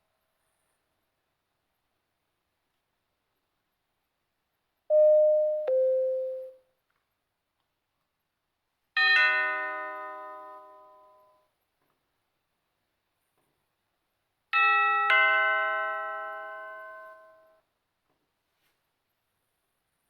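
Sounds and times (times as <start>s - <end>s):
rich bell-like chime: 4.9s - 6.6s, 9.0s - 11.4s
two-tone doorbell chime: 4.9s - 6.6s, 9.0s - 11.5s, 14.6s - 17.6s.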